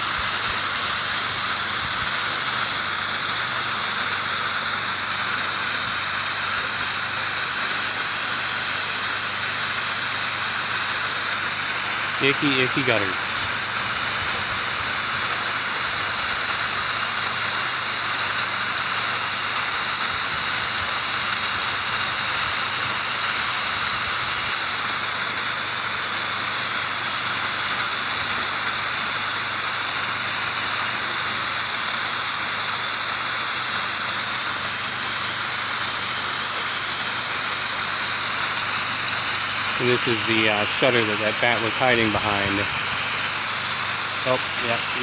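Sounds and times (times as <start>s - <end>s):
pressure washer spray hissing: 0.0s - 45.0s.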